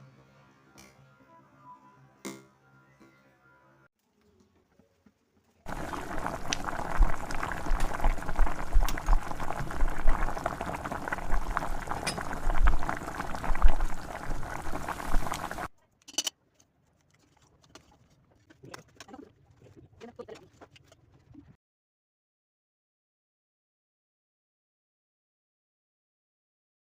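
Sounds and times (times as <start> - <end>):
thick bubbles popping in pot: 5.7 - 15.7.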